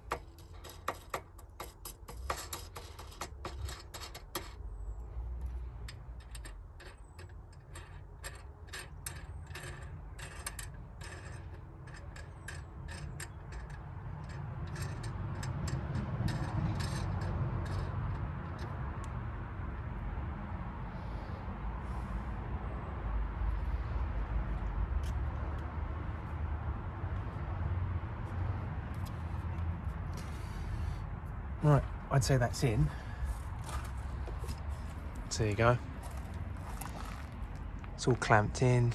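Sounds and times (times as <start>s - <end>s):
small metal clicks and taps: 0.0s - 4.7s, 5.4s - 19.2s.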